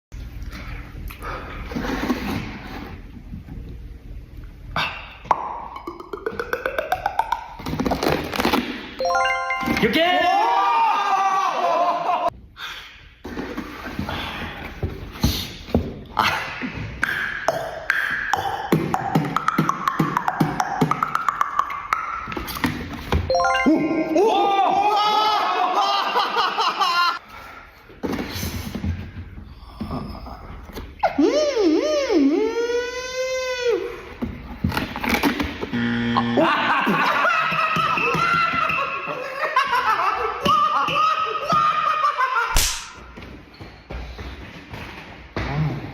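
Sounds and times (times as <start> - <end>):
beatboxing clicks and kicks: 4.8 - 8.9, 17.0 - 23.0.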